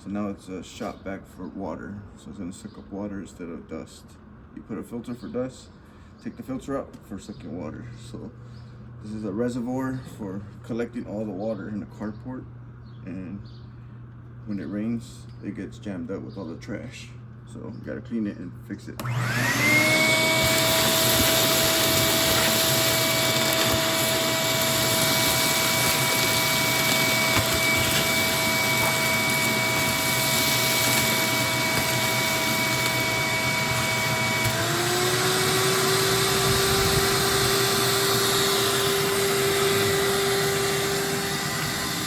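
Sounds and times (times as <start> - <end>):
shop vacuum sucking water: 19.0 - 42.0.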